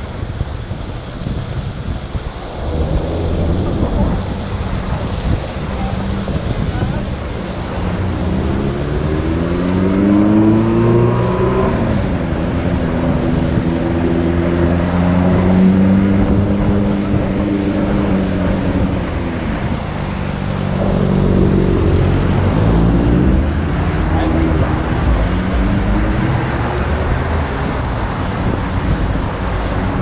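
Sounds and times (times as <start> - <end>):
traffic rumble: 0.0 - 30.0
vehicle engine accelerating: 1.5 - 6.8, 7.5 - 18.8, 20.6 - 28.2.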